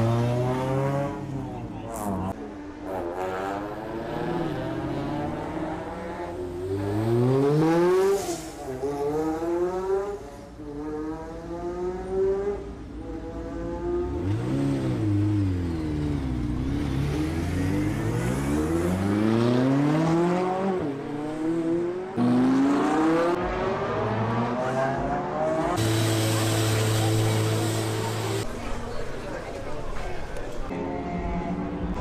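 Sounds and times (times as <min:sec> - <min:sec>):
car engines accelerating hard: 0:00.0 - 0:28.6
car passing by: 0:06.7 - 0:10.3.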